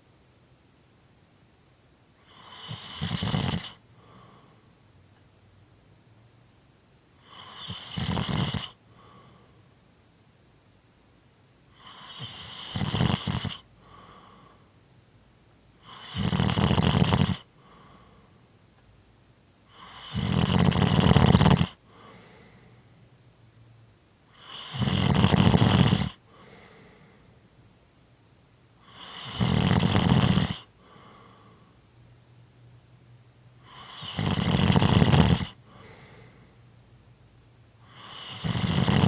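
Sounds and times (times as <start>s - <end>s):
person snoring: 2.2s - 4.2s, 7.2s - 9.2s, 11.8s - 14.6s, 15.8s - 17.9s, 19.7s - 22.4s, 24.4s - 26.8s, 28.8s - 31.5s, 33.7s - 36.4s, 37.9s - 39.0s
faint breathing: 2.2s - 4.8s, 8.7s - 9.8s, 13.5s - 14.8s, 17.4s - 18.6s, 21.8s - 23.1s, 26.0s - 27.6s, 30.6s - 31.9s, 35.4s - 36.8s.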